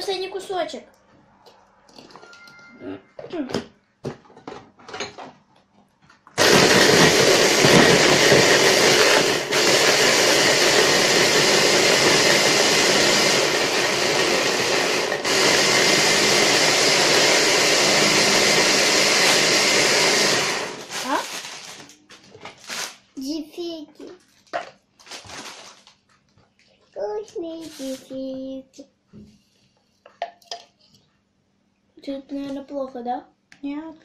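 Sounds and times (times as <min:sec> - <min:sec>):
electric blender grinding: 0:06.4 - 0:21.8.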